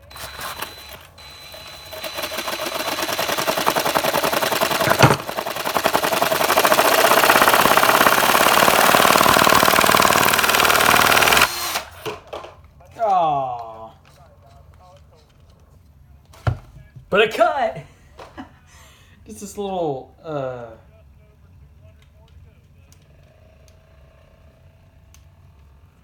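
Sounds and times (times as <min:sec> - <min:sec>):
toy chainsaw chain rattling: 0:01.9 - 0:11.5.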